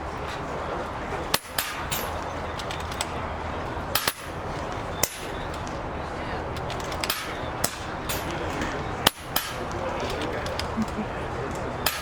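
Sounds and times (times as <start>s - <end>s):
air rifles firing sharp cracks: 1.3s - 3.1s, 3.9s - 5.8s, 6.6s - 10.6s.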